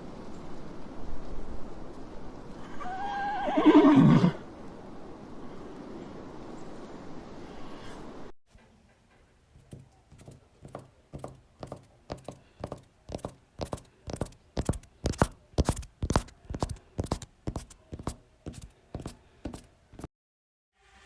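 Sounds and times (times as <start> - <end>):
sharp knocks or taps: 9.6 - 20.1.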